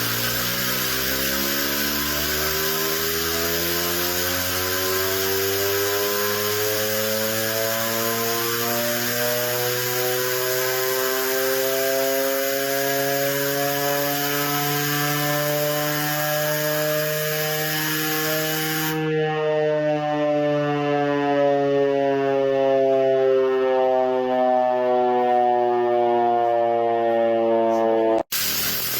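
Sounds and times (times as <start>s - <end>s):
steady hiss: 0.0s - 4.3s, 28.3s - 28.9s
siren winding up: 0.0s - 28.3s.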